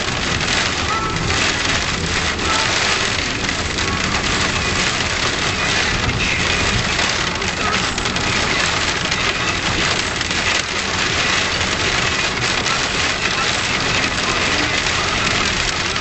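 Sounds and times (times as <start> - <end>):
hail and rain drumming: 0.0 - 16.0.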